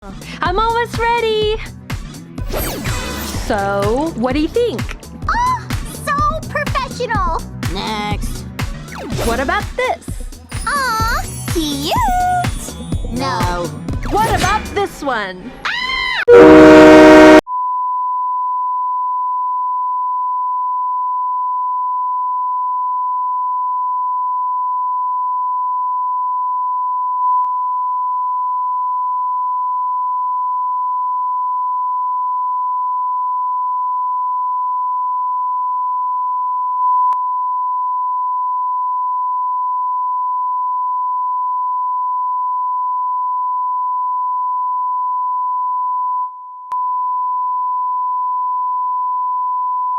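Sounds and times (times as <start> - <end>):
loud train horn blast: 16.3 - 17.4.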